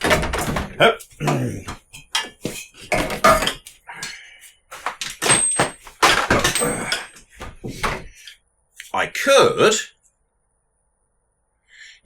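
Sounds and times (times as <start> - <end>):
object knocking and clunking: 0.0 - 3.6, 4.7 - 8.1.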